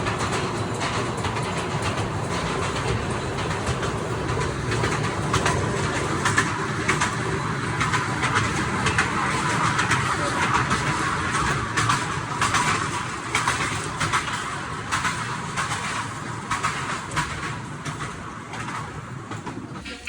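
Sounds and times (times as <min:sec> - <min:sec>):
small train rumbling: 0:00.0 - 0:20.0
wheels clicking and clattering: 0:00.0 - 0:20.0.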